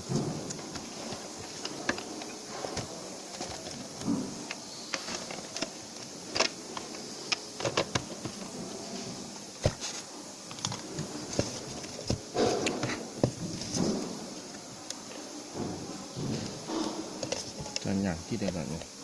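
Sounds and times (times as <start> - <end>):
small hard parts clicking: 0.0 - 8.5.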